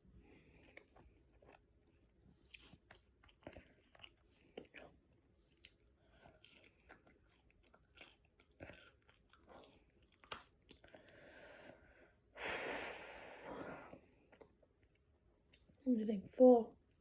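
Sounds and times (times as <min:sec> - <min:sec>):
person chewing and eating: 0:00.2 - 0:11.2.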